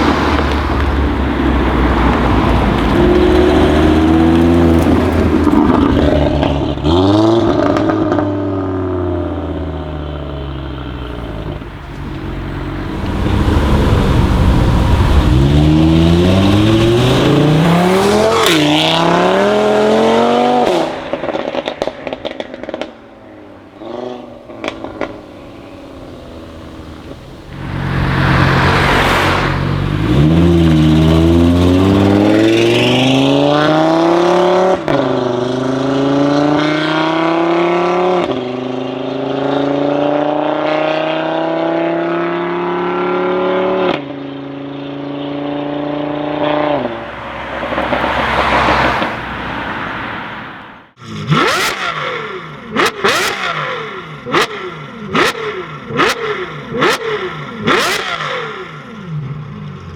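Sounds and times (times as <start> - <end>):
car engine accelerating hard: 0.0 - 58.9
engine revving: 0.0 - 59.1
exhaust crackles and pops: 21.2 - 33.0.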